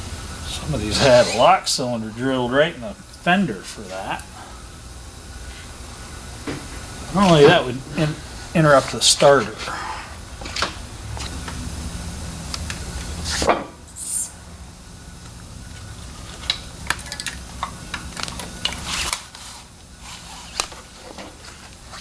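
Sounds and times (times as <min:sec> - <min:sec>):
low steady hum: 0:00.0 - 0:22.0
metal tools clicking and clinking: 0:16.4 - 0:18.8.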